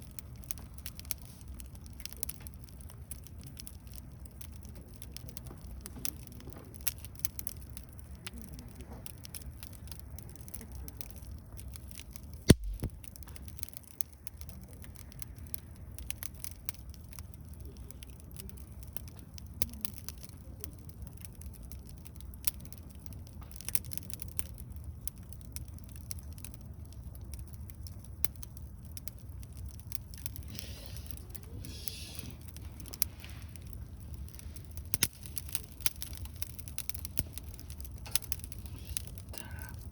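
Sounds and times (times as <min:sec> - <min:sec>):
wood fire crackling: 0:00.0 - 0:39.9
sharp pops of fire: 0:09.8 - 0:17.4, 0:25.0 - 0:39.9
steady low rumble: 0:12.5 - 0:13.2.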